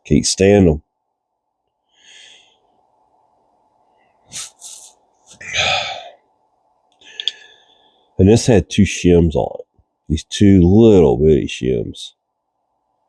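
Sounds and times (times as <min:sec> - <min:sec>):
person breathing: 0:01.8 - 0:02.8, 0:03.9 - 0:06.2, 0:07.0 - 0:08.2.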